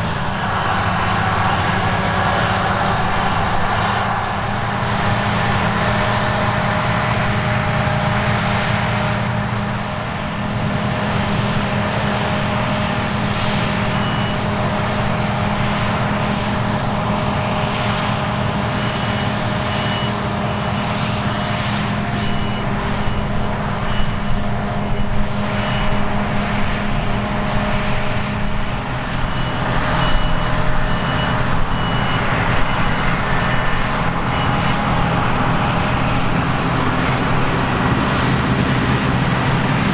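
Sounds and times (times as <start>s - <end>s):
diesel machinery running: 0.0s - 39.9s
warning beeper: 18.7s - 27.8s.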